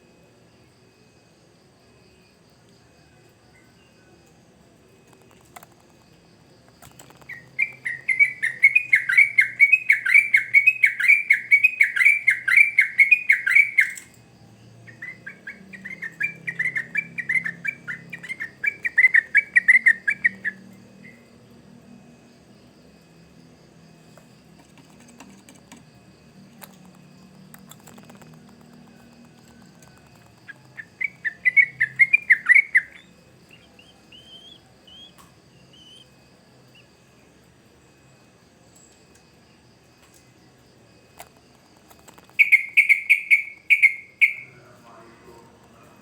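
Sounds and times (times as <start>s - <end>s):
bird chattering song: 6.9s - 14.1s, 14.9s - 21.2s, 27.7s - 36.1s, 42.1s - 46.0s.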